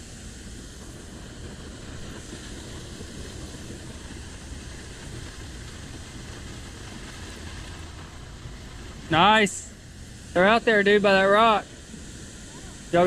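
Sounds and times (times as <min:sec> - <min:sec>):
water rushing below a spillway: 0:00.0 - 0:13.0.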